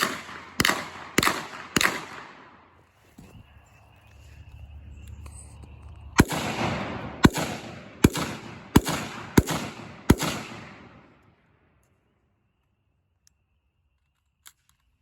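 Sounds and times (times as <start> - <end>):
gunshots with echo: 0.0 - 2.7, 6.2 - 11.2.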